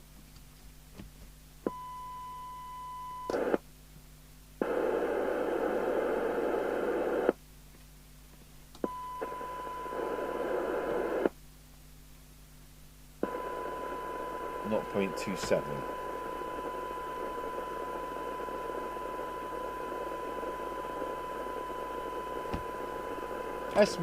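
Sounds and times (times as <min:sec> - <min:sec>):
radio receiver hiss: 0:03.3 - 0:03.6, 0:04.6 - 0:07.4, 0:08.8 - 0:11.4, 0:13.2 - 0:24.0
radio test tone: 0:13.2 - 0:24.0.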